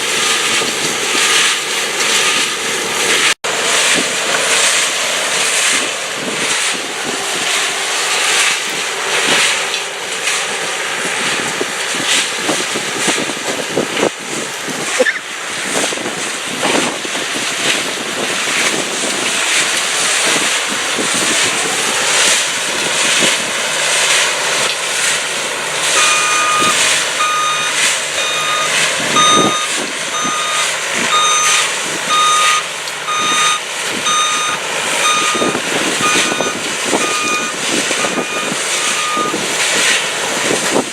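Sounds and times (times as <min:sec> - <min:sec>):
heavy screening machinery running: 0:00.0 - 0:40.9
reversing alarm beeping: 0:25.9 - 0:39.5.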